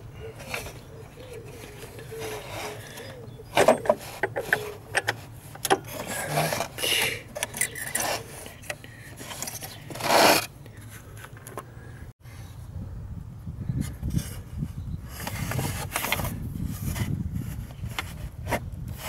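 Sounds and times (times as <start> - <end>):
hand tools clicking and scraping: 0.2 - 11.6.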